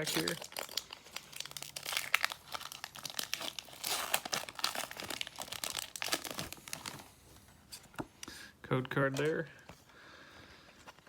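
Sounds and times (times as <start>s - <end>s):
foil pack tearing and crinkling: 0.0s - 7.0s.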